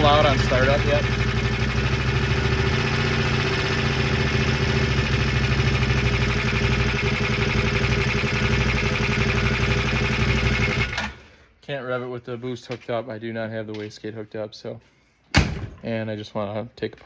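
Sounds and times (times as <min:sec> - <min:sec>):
engine knocking noise: 0:00.0 - 0:11.0
engine idling: 0:00.0 - 0:11.3.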